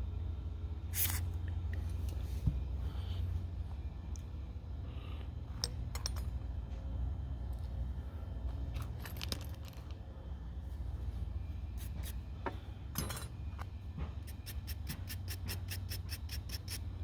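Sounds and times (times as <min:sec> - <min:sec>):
steady low hum: 0:00.0 - 0:17.0
small metal parts clinking: 0:05.6 - 0:06.4, 0:08.7 - 0:10.0, 0:12.9 - 0:13.7.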